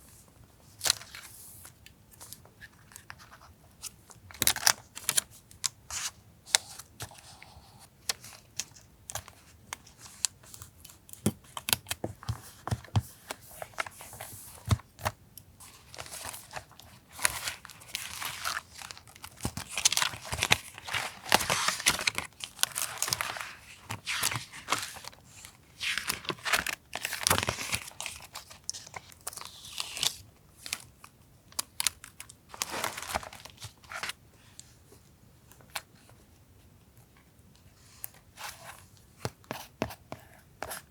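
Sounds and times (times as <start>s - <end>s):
paper rustling and crinkling: 11.4s - 30.9s, 31.6s - 34.2s.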